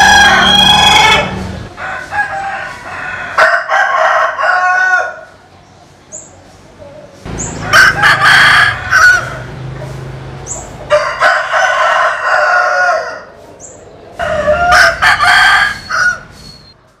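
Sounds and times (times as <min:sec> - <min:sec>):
roosters crowing: 0:00.0 - 0:05.4, 0:07.3 - 0:16.8.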